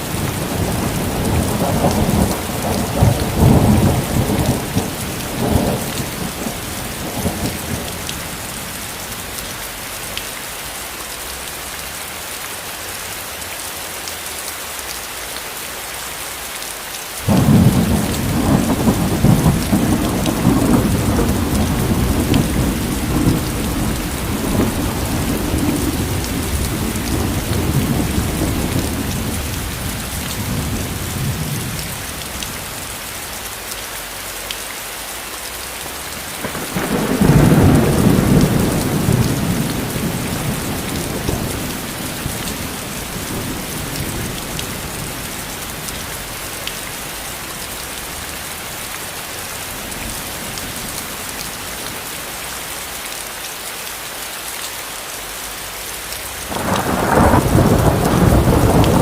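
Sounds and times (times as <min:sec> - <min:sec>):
thunder rumbling: 0:00.0 - 0:08.7, 0:17.2 - 0:33.0, 0:36.0 - 0:52.0, 0:56.4 - 0:59.0
steady rain hissing: 0:00.0 - 0:59.0
loud thunderclap: 0:00.2 - 0:08.0, 0:17.3 - 0:31.8, 0:36.4 - 0:45.2, 0:56.5 - 0:59.0.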